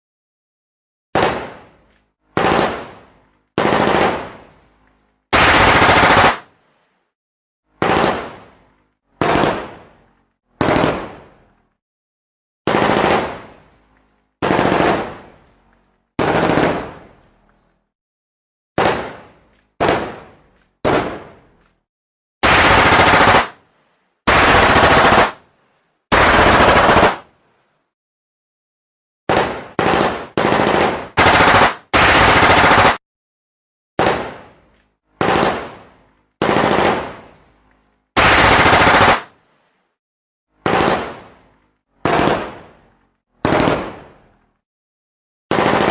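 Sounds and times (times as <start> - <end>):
automatic gunfire bursts: 2.4 - 2.9, 3.6 - 4.3, 5.3 - 6.5, 7.8 - 8.3, 10.6 - 11.2, 12.7 - 13.4, 14.4 - 15.2, 16.2 - 17.0, 22.4 - 23.6, 24.3 - 25.4, 26.1 - 27.2, 29.3 - 33.0, 35.2 - 35.7, 36.4 - 37.2, 38.2 - 39.3, 40.6 - 41.2, 42.0 - 42.6, 43.4 - 44.0, 45.5 - 45.9.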